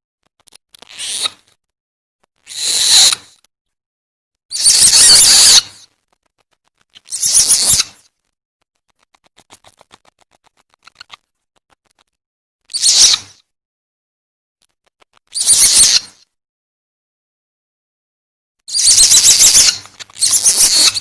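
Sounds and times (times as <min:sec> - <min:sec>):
civet calls: 0:02.4 - 0:03.4, 0:04.5 - 0:05.8, 0:06.8 - 0:08.1, 0:12.7 - 0:13.4, 0:15.1 - 0:16.2, 0:18.7 - 0:21.0.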